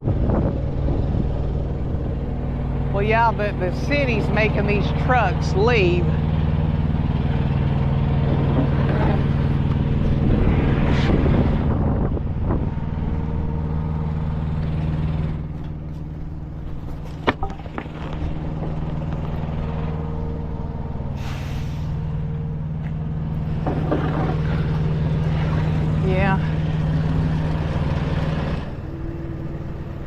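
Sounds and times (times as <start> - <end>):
diesel truck engine idling: 0.0 - 30.0.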